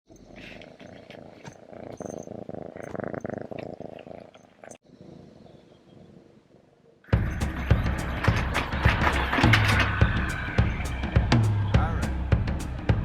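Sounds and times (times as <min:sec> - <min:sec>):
cat purring: 0:00.1 - 0:07.4.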